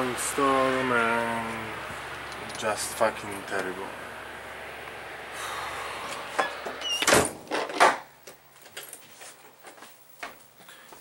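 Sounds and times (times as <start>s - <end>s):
door squeaking: 6.4s - 8.0s
door shutting with knocks: 6.4s - 8.1s.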